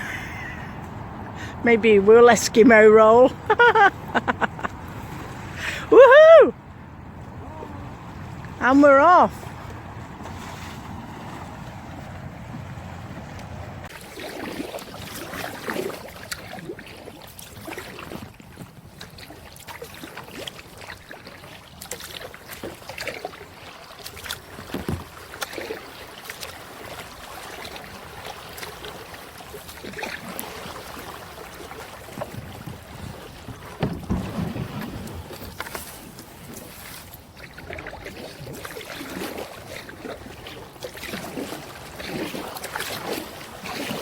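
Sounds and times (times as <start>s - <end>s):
paddle splashing in water: 0.0s - 44.0s
low thump: 33.8s - 34.8s.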